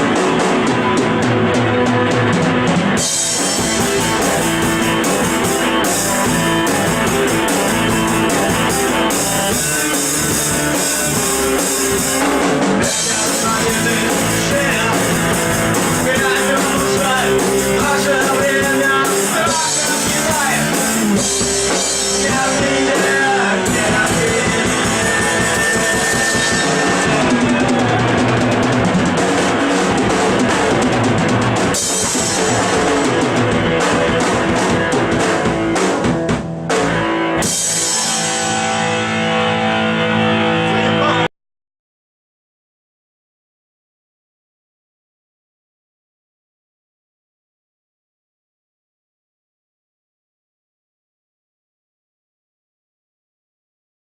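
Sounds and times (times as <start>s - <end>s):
rock band playing: 0.0s - 41.3s.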